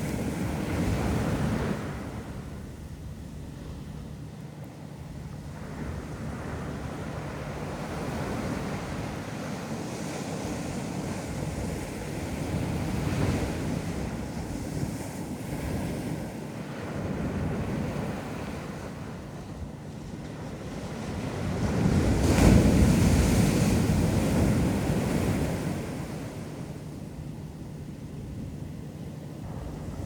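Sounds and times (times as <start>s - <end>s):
ocean waves washing onto beach: 0.0s - 30.0s
wind buffeting microphone: 16.8s - 30.0s.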